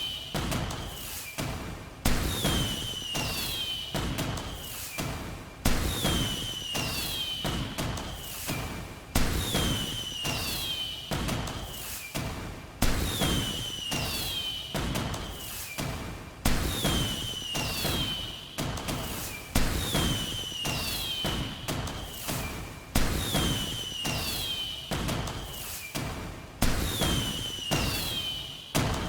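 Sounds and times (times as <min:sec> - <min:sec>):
falling firework whistle: 0:00.0 - 0:01.3, 0:02.1 - 0:05.0, 0:05.7 - 0:12.1, 0:12.9 - 0:29.0
fireworks bangs: 0:16.5 - 0:25.7, 0:26.6 - 0:29.0.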